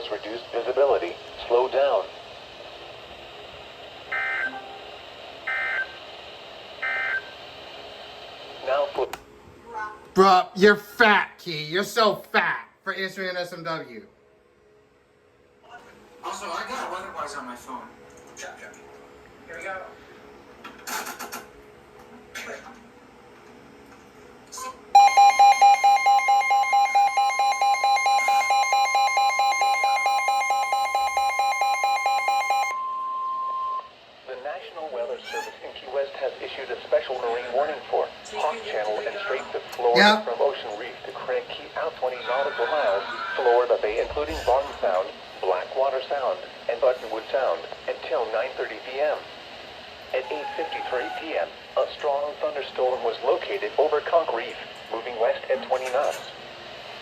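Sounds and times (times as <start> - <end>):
phone two-tone alarm: 4.1 - 4.8, 5.5 - 6.0, 6.8 - 7.3, 25.0 - 33.9.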